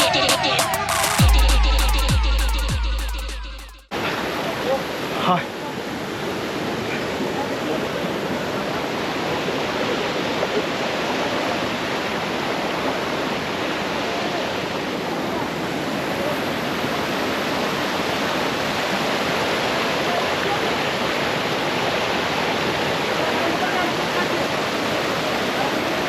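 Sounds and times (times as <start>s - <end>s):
flowing water rushing: 3.9s - 26.0s.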